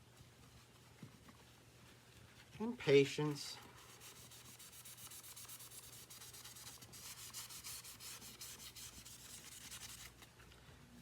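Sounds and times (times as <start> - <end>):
hand scrubbing plastic: 3.7 - 10.2.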